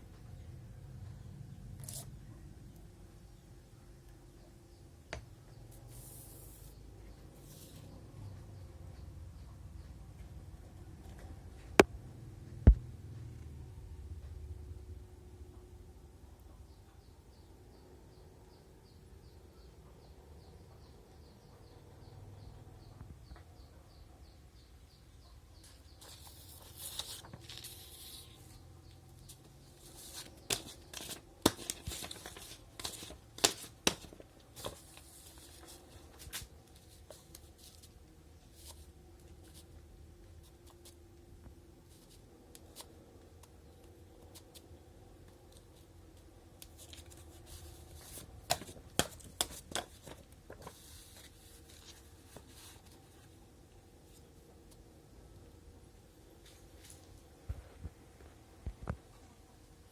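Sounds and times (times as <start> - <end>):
paper rustling: 26.0 - 28.6, 29.3 - 39.7, 46.6 - 53.4.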